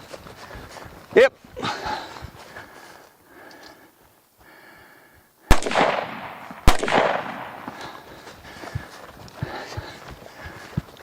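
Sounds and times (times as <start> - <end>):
gunshots with rolling echo: 5.5 - 8.1.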